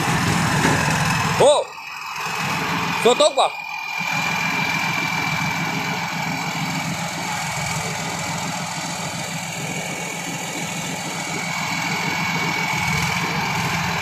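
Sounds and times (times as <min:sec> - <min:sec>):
large engine idling: 0:00.0 - 0:14.0
thin high whine: 0:01.3 - 0:08.4.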